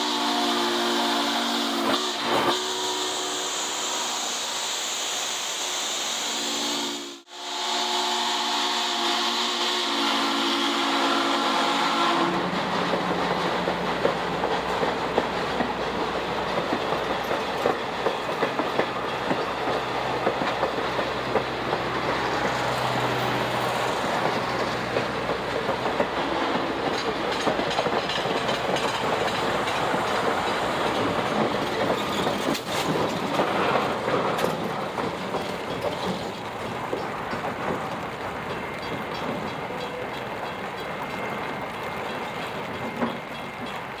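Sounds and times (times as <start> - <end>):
train running gear rumble: 10.9 - 44.0
wheels clicking over rail joints: 12.2 - 44.0.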